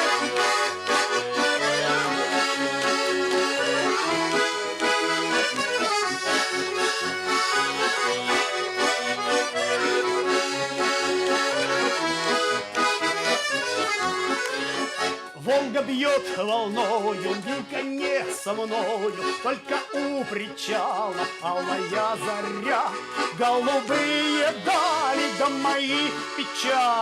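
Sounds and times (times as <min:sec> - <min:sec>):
button accordion playing folk melody: 0:00.0 - 0:27.0.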